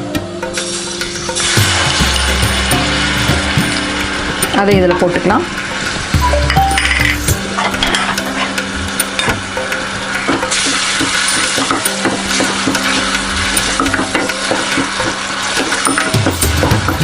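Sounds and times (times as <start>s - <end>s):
paste sizzling in hot oil: 10.2s - 17.0s.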